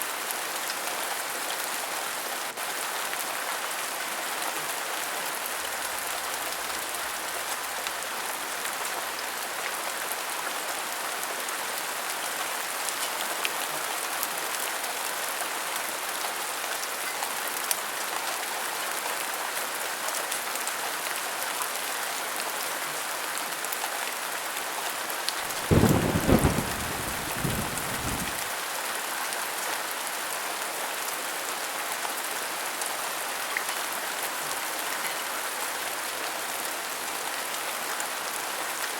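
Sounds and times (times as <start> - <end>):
heavy rain falling: 23.2 - 31.6
low roll of thunder: 25.5 - 28.5.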